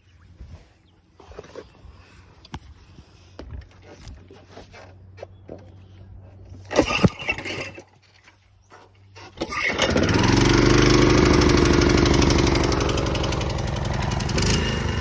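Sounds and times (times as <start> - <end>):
lawn mower engine starting: 6.6 - 8.4, 9.0 - 15.0.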